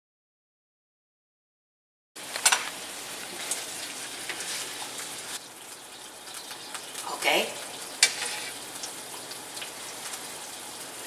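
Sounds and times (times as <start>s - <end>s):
hot pan sizzling: 2.2s - 11.0s.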